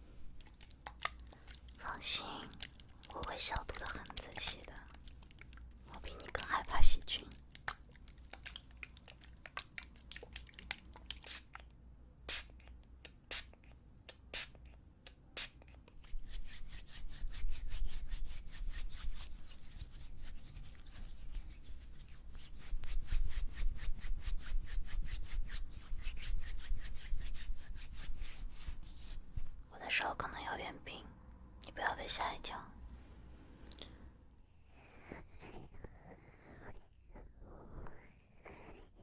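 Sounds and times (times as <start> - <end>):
hands rubbing together: 15.4 - 29.2.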